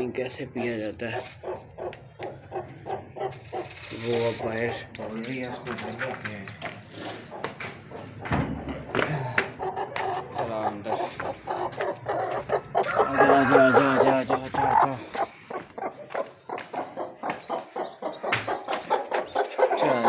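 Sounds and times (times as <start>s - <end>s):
hen clucking: 0.0s - 20.0s
quick clicks and scratches: 3.3s - 8.1s.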